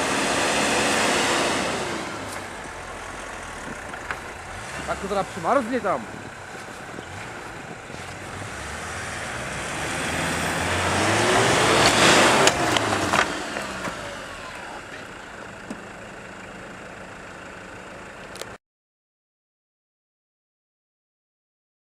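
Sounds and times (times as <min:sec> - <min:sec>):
rushing noise: 0:00.0 - 0:14.6
vehicle engine revving: 0:00.0 - 0:18.6.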